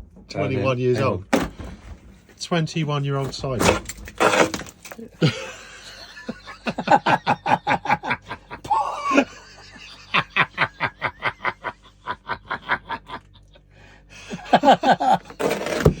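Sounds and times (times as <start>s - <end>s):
person laughing in breathy chuckles: 5.0s - 15.3s.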